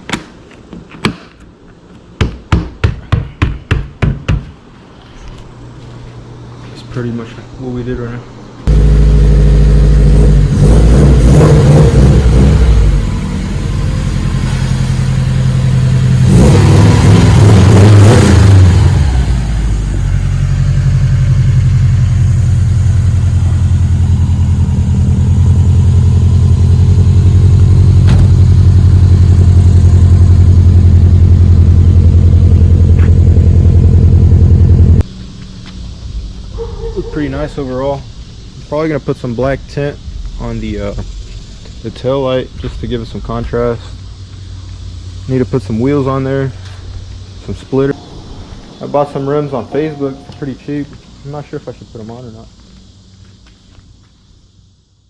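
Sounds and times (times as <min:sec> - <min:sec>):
car engine running and revving: 0:08.7 - 0:35.0.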